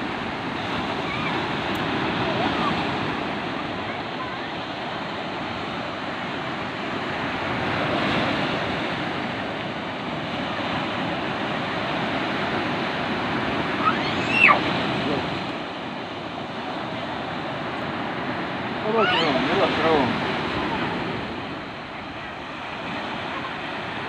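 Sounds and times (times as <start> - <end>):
sea surf washing onto beach: 0.0 - 24.0.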